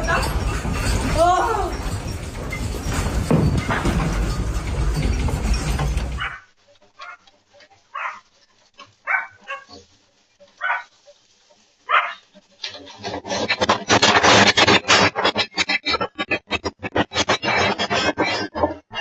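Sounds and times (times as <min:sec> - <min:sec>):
dog barking: 0:06.2 - 0:07.2, 0:07.9 - 0:08.3, 0:09.0 - 0:09.8, 0:10.6 - 0:10.9, 0:11.9 - 0:12.2.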